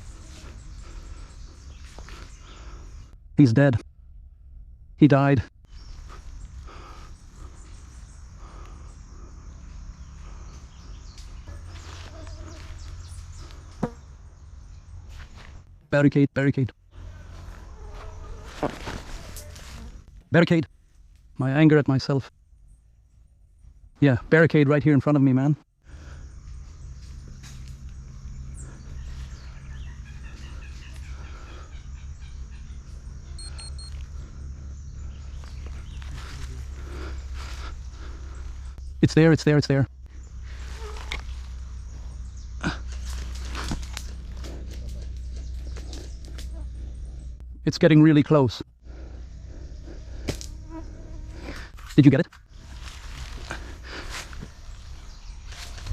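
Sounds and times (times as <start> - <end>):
birds chirping faintly: 0.0 - 3.7, 5.0 - 55.9
steady low rumble: 0.0 - 16.0, 25.8 - 50.3.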